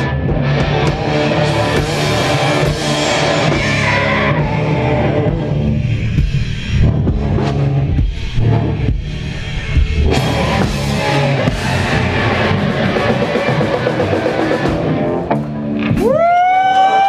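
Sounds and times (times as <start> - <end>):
rising tone: 0.0 - 17.0
rock band playing live: 0.0 - 17.0.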